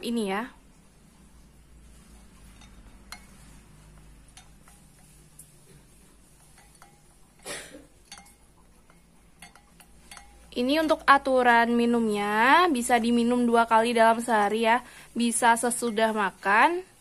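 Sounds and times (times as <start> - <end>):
spoon clinking against glass: 2.2 - 3.6, 4.3 - 5.5, 6.4 - 11.1.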